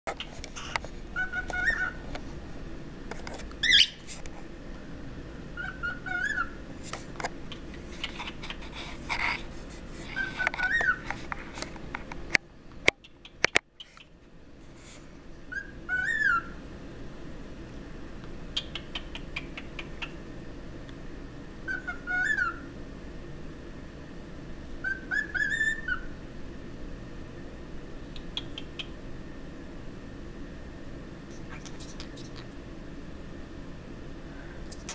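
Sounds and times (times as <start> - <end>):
scratchy bird chirps: 0.2 - 2.0, 3.6 - 4.2, 7.5 - 11.3, 13.1 - 16.4, 31.3 - 32.5
cockatiels whistling: 1.2 - 2.0, 3.6 - 4.0, 5.6 - 6.6, 15.5 - 16.5, 21.7 - 22.6, 24.8 - 26.1.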